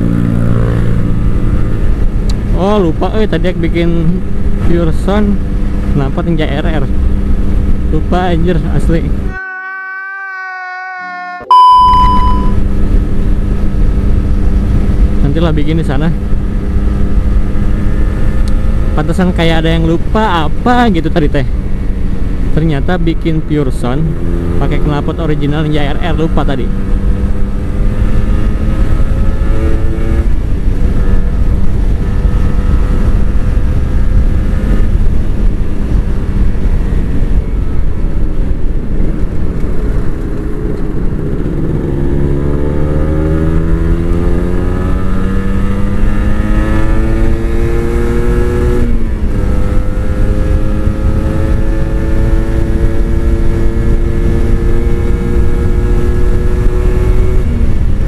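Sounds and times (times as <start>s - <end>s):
motorcycle engine revving: 0.0s - 3.1s, 23.2s - 58.0s.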